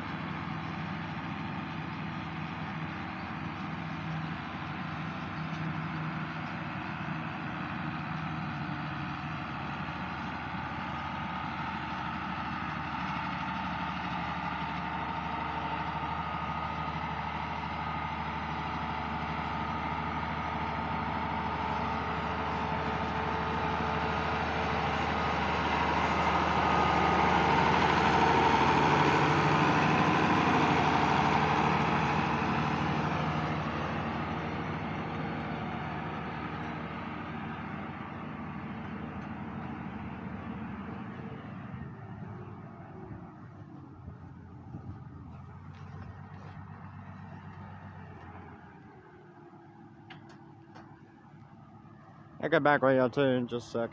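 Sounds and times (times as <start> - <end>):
tractor engine running: 0.0 - 53.9.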